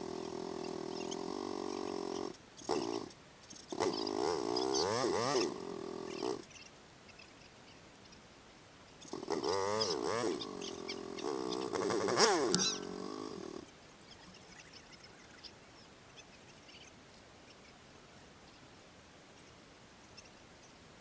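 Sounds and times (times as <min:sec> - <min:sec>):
vehicle engine revving: 0:03.7 - 0:06.4, 0:09.1 - 0:13.7.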